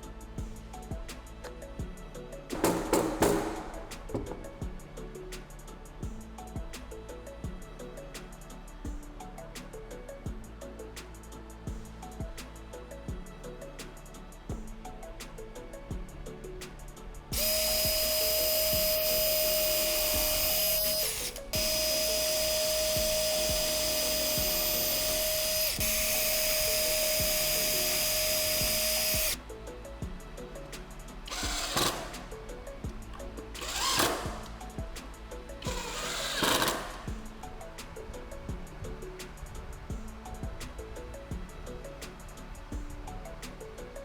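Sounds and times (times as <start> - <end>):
background music: 0.0 - 44.0
power drill running: 2.5 - 4.4, 17.4 - 29.4, 31.3 - 32.3, 33.6 - 34.5, 35.7 - 37.1
rough noisy bursts: 17.4 - 29.4.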